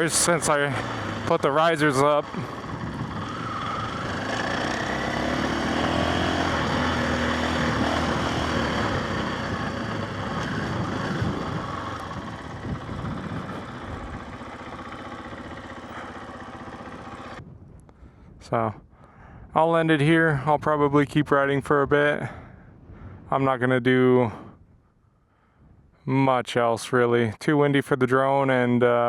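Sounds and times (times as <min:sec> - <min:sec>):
dirt bike engine revving: 0:00.0 - 0:17.4.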